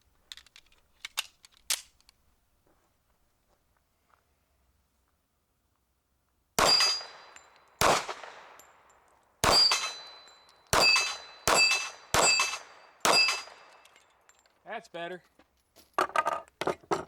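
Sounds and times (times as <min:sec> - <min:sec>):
steel plate ringing clang: 0:06.6 - 0:07.4, 0:09.4 - 0:13.6
pistol shots: 0:06.6 - 0:08.6, 0:09.4 - 0:13.8.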